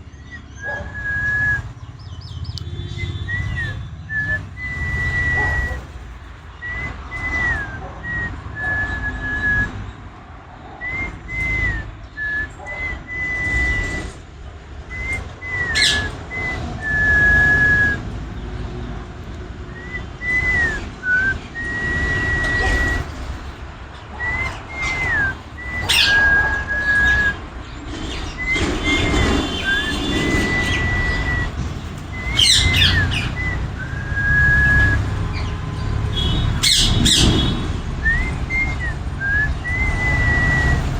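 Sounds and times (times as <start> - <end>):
parrots whistling: 2.9 - 9.8, 14.9 - 18.0, 19.8 - 40.9.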